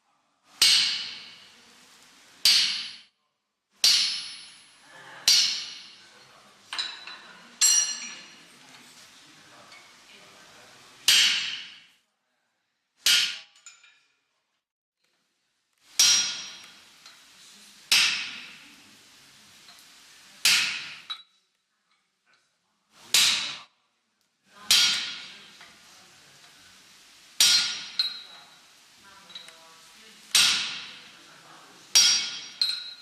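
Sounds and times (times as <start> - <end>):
hammer striking iron on anvil: 0.6 - 1.4, 2.4 - 3.1, 3.8 - 4.7, 5.3 - 6.0, 11.1 - 11.9, 13.0 - 13.6, 16.0 - 16.8, 17.9 - 18.6, 20.4 - 21.2, 23.1 - 23.7, 24.7 - 25.4, 27.4 - 28.3, 30.3 - 31.1, 31.9 - 33.0.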